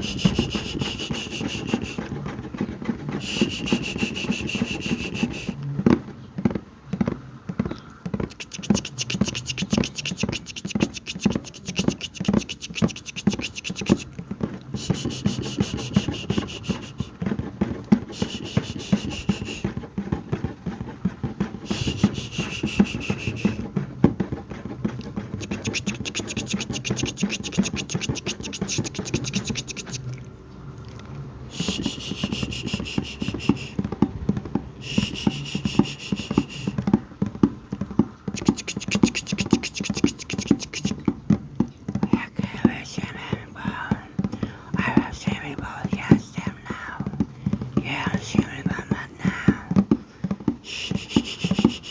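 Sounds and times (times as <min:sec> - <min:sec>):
asmr mouth sounds: 0:00.0 - 0:02.1, 0:03.2 - 0:05.6, 0:08.2 - 0:17.2, 0:18.1 - 0:19.8, 0:21.6 - 0:23.7, 0:25.1 - 0:30.3, 0:30.9 - 0:33.8, 0:34.8 - 0:36.8, 0:38.3 - 0:41.1, 0:42.0 - 0:49.9, 0:50.6 - 0:51.9
clicks and scratches on bucket: 0:00.0 - 0:51.9
thin high hiss: 0:34.8 - 0:36.8, 0:38.4 - 0:41.0.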